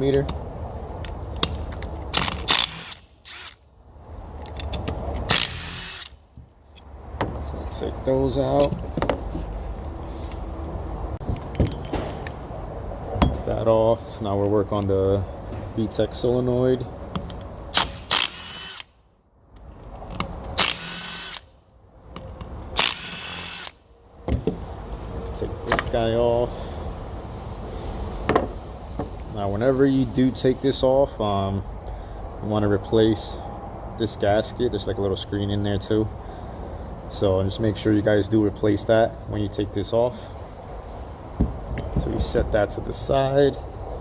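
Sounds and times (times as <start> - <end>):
ratchet loosening bolts: 1.0 - 3.6, 4.4 - 6.2, 22.3 - 23.8
power driver whirring: 5.3 - 6.2.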